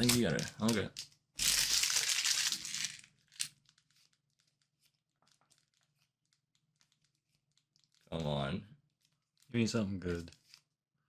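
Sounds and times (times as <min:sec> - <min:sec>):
foil wrapper tearing and crinkling: 0:00.0 - 0:04.6.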